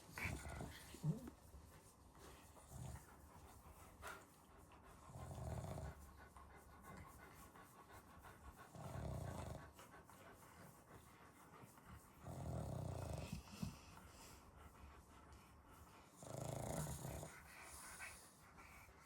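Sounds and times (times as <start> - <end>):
dog snoring: 12.2 - 13.8, 16.2 - 17.3.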